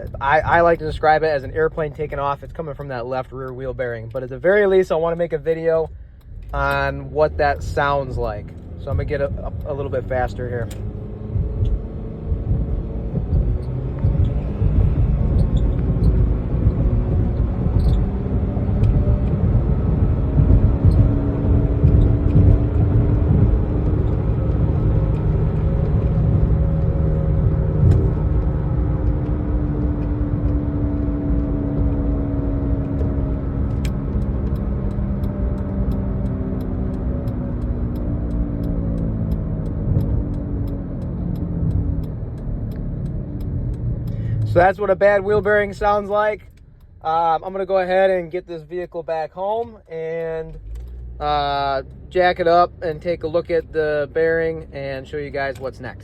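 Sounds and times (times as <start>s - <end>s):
car interior road rumble: 0.0s - 56.0s
droning wheel bearing growl: 6.4s - 46.3s.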